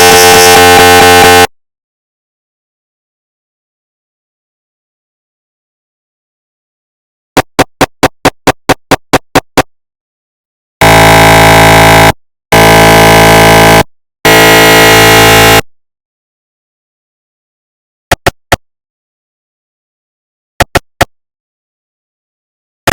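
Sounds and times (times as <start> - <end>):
loud long buzzing tones: 0.0 - 1.5, 10.8 - 15.7
short knocking pulses: 7.4 - 9.7.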